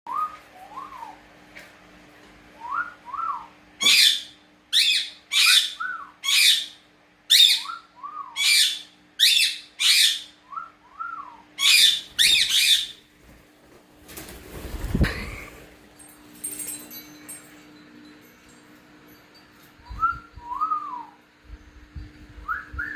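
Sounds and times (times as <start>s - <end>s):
parrot squawking: 3.8s - 7.8s, 8.4s - 10.4s, 11.6s - 13.0s.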